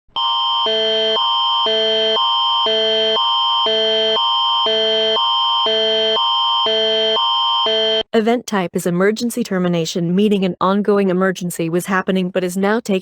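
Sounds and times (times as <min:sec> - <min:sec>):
constant high tone: 0:00.1 - 0:08.0.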